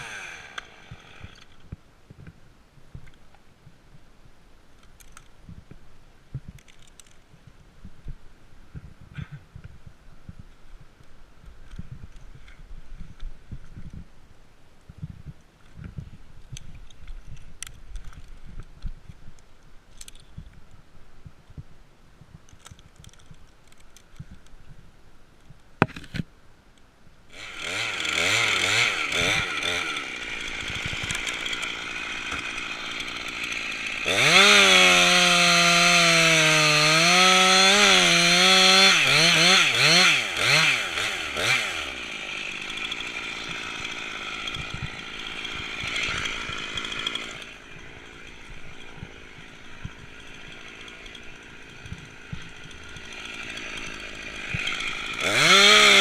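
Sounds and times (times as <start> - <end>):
chainsaw engine revving: 0.0 - 1.5, 27.3 - 56.0.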